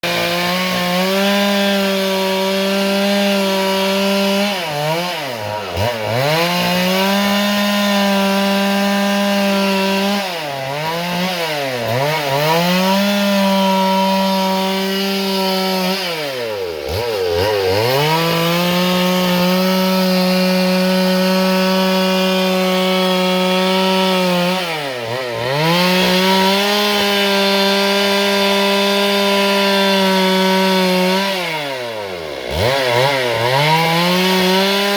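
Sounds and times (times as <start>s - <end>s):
chainsaw cutting wood: 0.0s - 34.9s.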